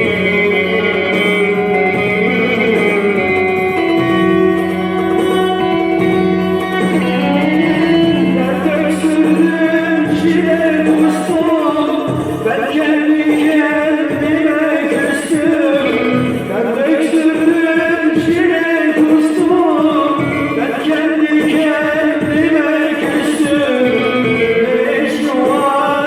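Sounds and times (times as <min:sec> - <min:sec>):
instrumental melody bending: 0:00.0 - 0:26.0
steady musical accompaniment: 0:00.0 - 0:26.0.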